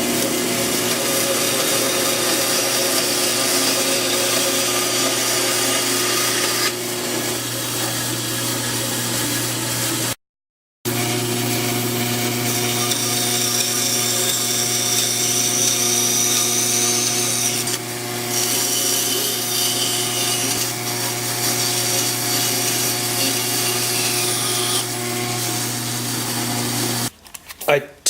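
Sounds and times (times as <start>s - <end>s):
power tool motor humming: 0.0s - 10.2s, 10.9s - 27.1s
hiss of saw cutting plywood: 2.6s - 10.1s.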